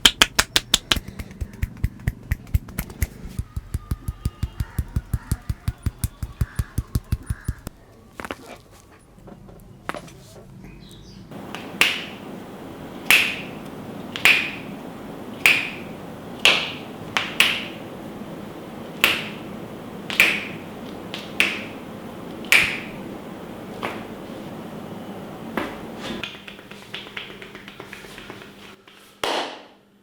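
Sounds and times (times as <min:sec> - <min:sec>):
hands snapping cracks: 0:00.0 - 0:07.8, 0:14.2 - 0:14.5.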